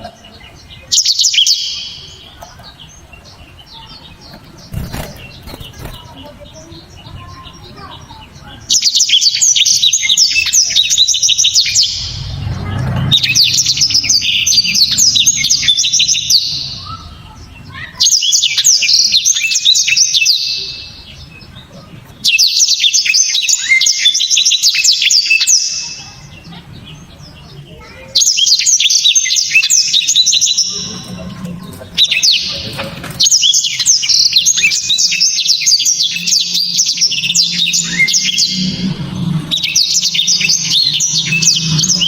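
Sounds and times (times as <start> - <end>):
canary singing rapid trills: 0.0 - 42.0.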